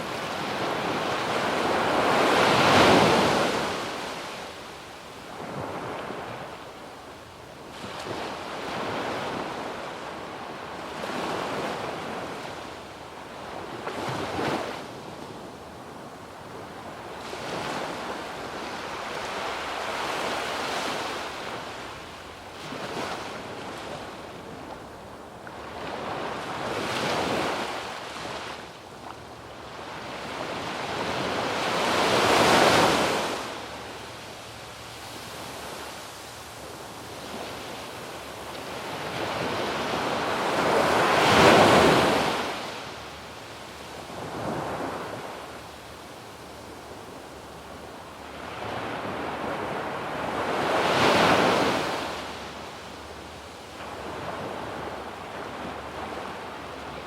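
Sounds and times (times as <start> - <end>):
sea waves breaking on beach: 0.0 - 4.7, 29.6 - 45.6, 48.3 - 53.2.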